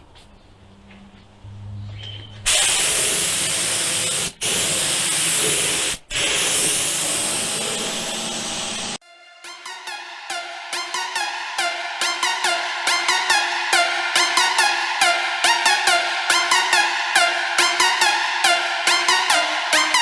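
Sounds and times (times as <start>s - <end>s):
electronic music: 2.4s - 20.0s
paint spray gun hissing: 2.5s - 9.0s.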